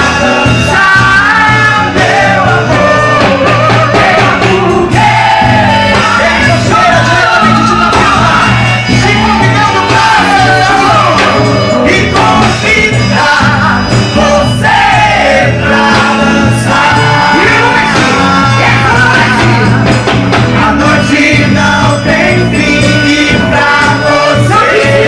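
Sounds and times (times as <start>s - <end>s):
loud music with singer: 0.0s - 25.0s
steady bass line: 0.0s - 25.0s.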